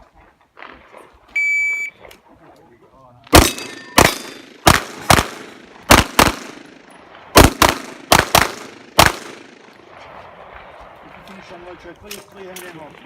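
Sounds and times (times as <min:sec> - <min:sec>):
handgun shots with echo: 0:03.3 - 0:06.6.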